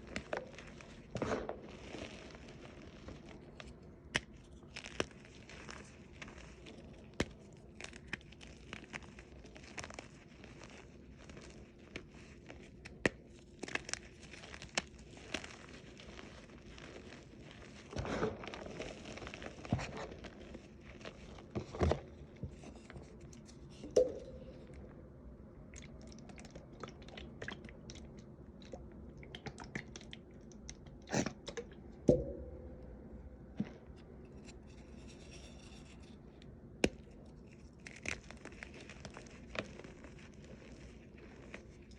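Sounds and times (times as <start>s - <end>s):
chalk crackling and crumbling: 0.0s - 24.9s, 33.6s - 41.9s.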